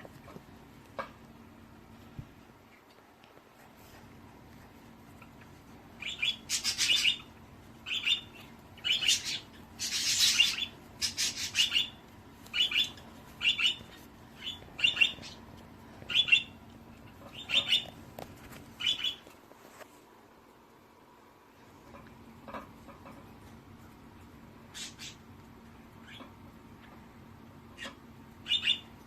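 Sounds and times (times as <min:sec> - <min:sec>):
bird chirping: 0:06.0 - 0:15.4, 0:16.1 - 0:18.0, 0:18.8 - 0:19.2, 0:27.8 - 0:29.0.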